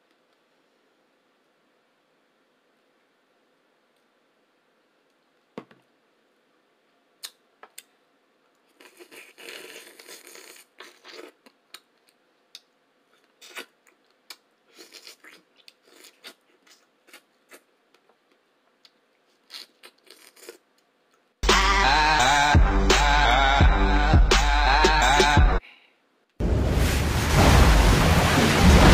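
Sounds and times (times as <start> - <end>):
chewing mouth clicks: 8.8 - 17.7
loud music: 21.4 - 25.6.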